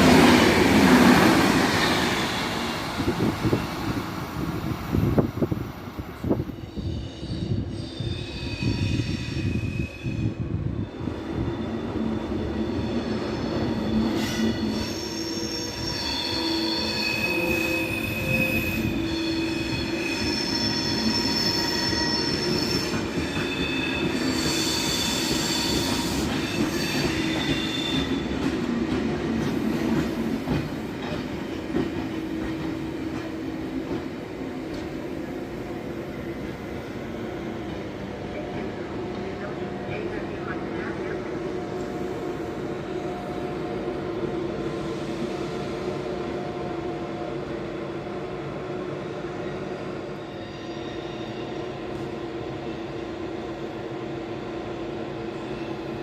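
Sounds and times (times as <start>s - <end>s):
train wheels squealing: 1.6s - 28.6s, 49.4s - 52.1s.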